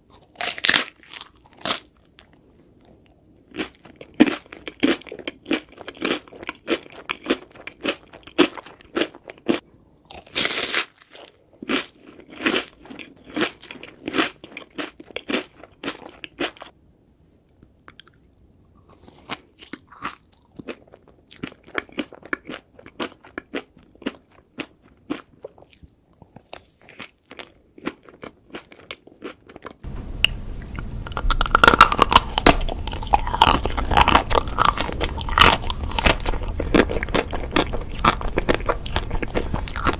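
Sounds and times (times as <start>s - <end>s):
ice cream crunching: 18.9s - 39.9s
steady hiss: 29.9s - 33.3s.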